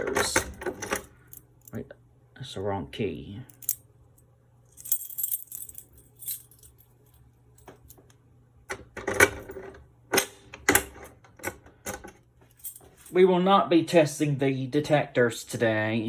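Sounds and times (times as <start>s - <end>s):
keys jangling: 3.5s - 3.8s, 4.8s - 7.0s, 12.5s - 13.2s.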